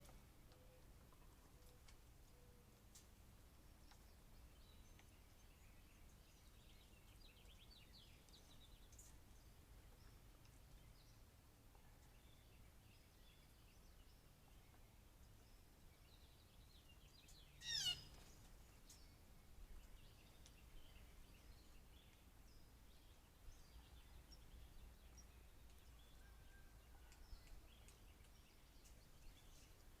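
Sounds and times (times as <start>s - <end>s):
faint bird chirps: 15.6s - 30.0s
bird chirps and calls: 16.9s - 19.2s.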